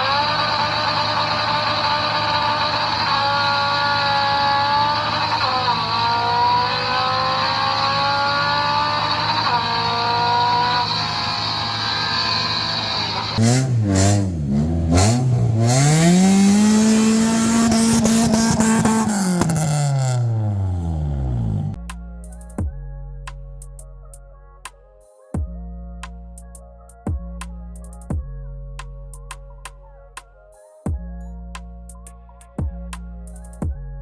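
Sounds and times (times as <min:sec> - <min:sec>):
car engine running and revving: 0:00.0 - 0:21.8.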